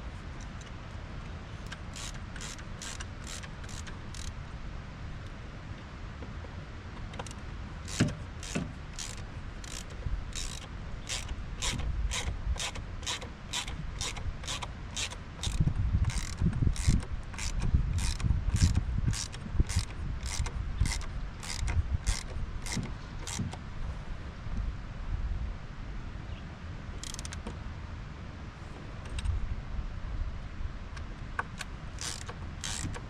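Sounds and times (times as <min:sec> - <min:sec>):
socket ratchet clicking: 0:01.6 - 0:04.3, 0:07.2 - 0:23.6, 0:27.0 - 0:27.4, 0:31.4 - 0:33.0.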